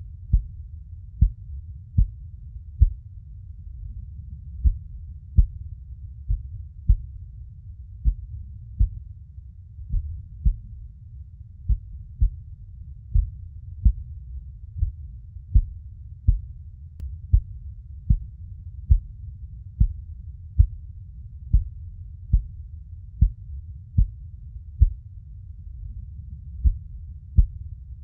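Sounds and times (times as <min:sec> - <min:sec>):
constant low rumble: 0:00.0 - 0:28.0
heartbeat thumps: 0:00.2 - 0:00.6, 0:01.2 - 0:02.2, 0:02.8 - 0:03.0, 0:04.6 - 0:07.3, 0:08.0 - 0:09.1, 0:09.8 - 0:10.8, 0:11.6 - 0:12.5, 0:13.1 - 0:16.6, 0:17.3 - 0:19.2, 0:19.8 - 0:20.8, 0:21.5 - 0:22.6, 0:23.2 - 0:24.2, 0:24.8 - 0:25.0, 0:26.5 - 0:27.7.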